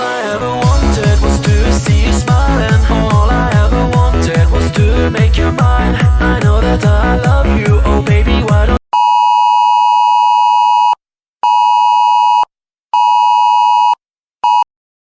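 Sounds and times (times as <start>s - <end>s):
electronic dance music: 0.0s - 8.8s.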